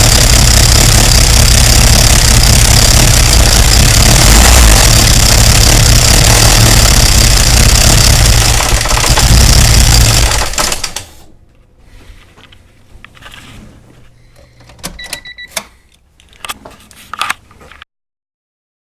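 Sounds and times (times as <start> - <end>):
loud vehicle engine running: 0.0 - 11.0
short beep: 14.5 - 15.6.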